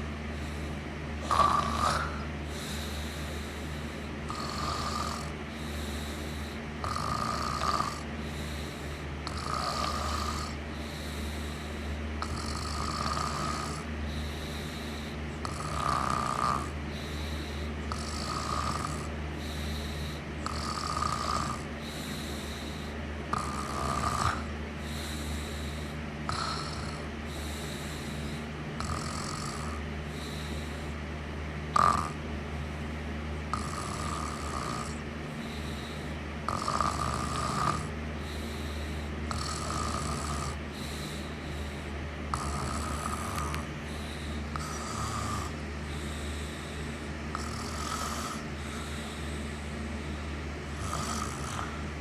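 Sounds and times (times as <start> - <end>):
low hum: 0.0 - 20.5, 21.6 - 28.8, 40.4 - 52.0
person snoring: 0.0 - 30.9, 31.7 - 32.2, 33.5 - 52.0.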